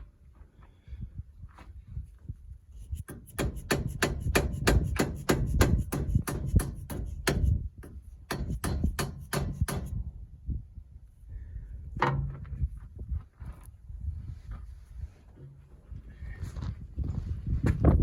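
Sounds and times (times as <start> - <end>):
hammer tapping on metal: 3.0 - 10.0.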